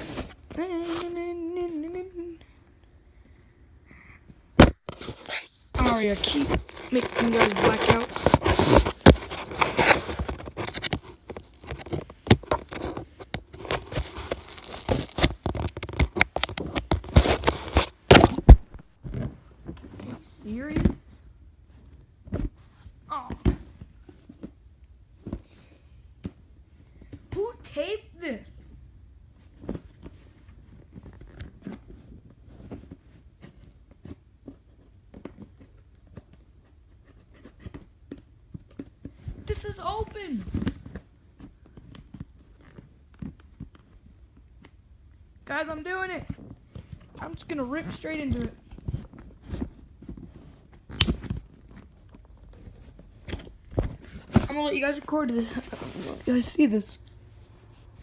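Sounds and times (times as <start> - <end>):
packaging scraping and crackling: 4.8 - 18.8
scissors snipping package: 4.9 - 10.9.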